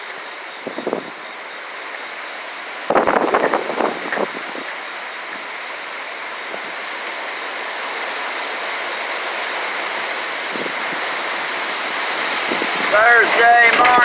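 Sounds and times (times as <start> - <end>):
strong wind rushing: 0.6 - 1.2, 2.8 - 5.6, 9.9 - 14.0.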